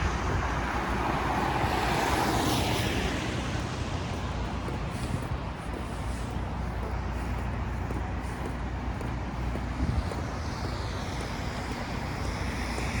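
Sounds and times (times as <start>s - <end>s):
motor vehicle rumble: 0.0s - 13.0s.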